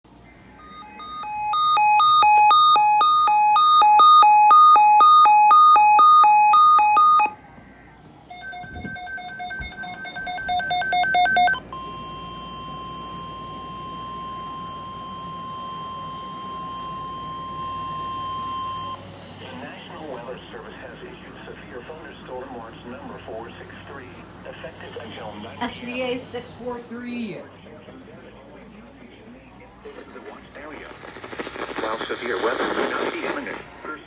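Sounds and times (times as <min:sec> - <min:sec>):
steady warning alarm tone: 0:00.1 - 0:07.4, 0:08.3 - 0:25.6
two-pitch electronic alarm beeps: 0:00.5 - 0:07.4, 0:08.3 - 0:19.0.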